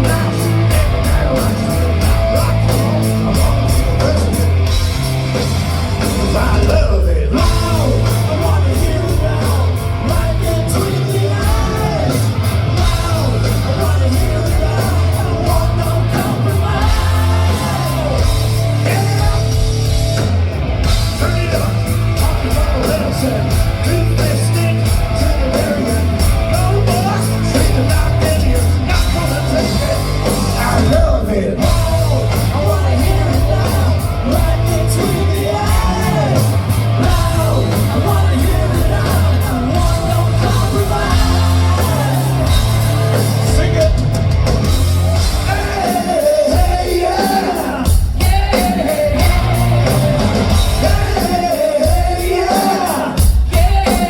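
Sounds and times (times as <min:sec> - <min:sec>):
drum beat: 0:00.0 - 0:54.0
live rock band playing: 0:00.0 - 0:54.0
person singing: 0:21.2 - 0:44.1, 0:45.2 - 0:54.0.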